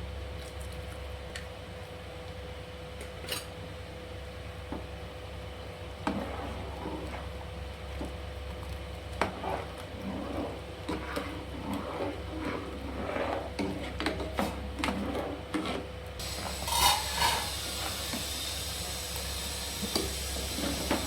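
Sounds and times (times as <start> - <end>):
utensil scraping and knocking: 10.2 - 18.2
hiss: 16.2 - 21.0.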